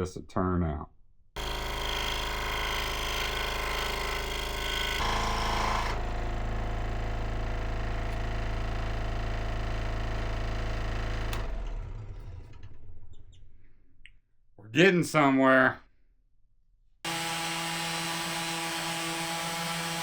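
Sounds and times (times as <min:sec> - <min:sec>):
power tool running on wood: 0:01.4 - 0:12.7, 0:17.1 - 0:20.0.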